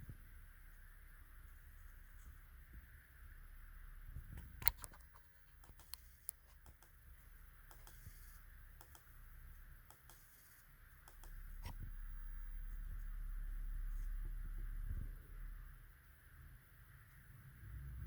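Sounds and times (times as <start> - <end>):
faint steady hiss: 0.0 - 18.0.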